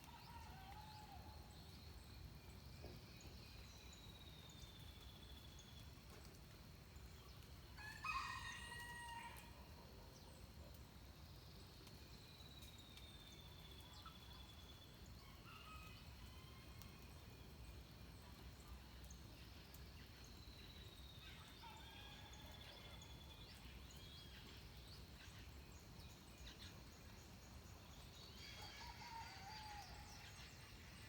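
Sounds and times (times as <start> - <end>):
rooster crowing: 7.8 - 9.5.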